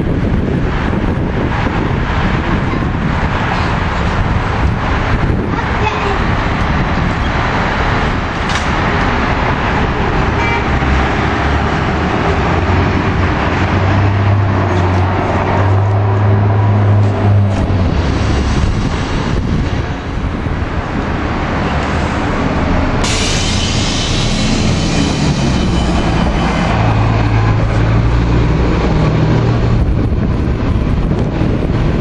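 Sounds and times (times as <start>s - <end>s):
bus diesel engine droning: 0.0s - 32.0s
traffic noise: 0.0s - 32.0s.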